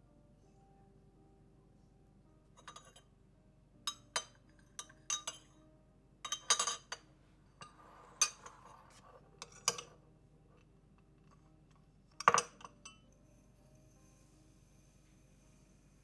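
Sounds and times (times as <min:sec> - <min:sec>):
dishes and utensils clinking: 0:02.6 - 0:03.1, 0:03.9 - 0:05.6, 0:06.3 - 0:10.0, 0:12.2 - 0:13.1.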